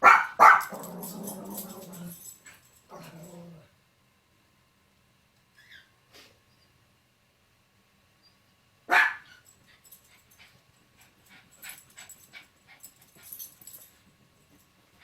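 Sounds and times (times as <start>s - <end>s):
dog barking: 0.0s - 0.8s, 8.9s - 9.4s.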